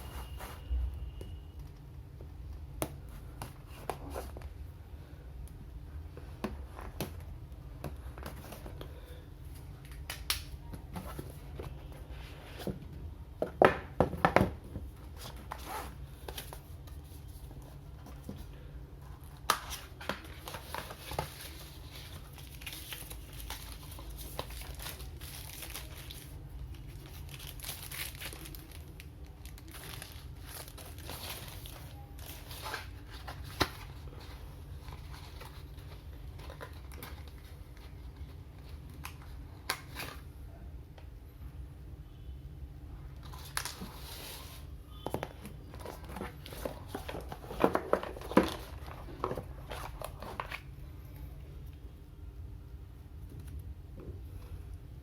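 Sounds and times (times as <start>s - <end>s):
plastic crinkling and tearing: 19.3s - 38.3s, 43.2s - 44.6s.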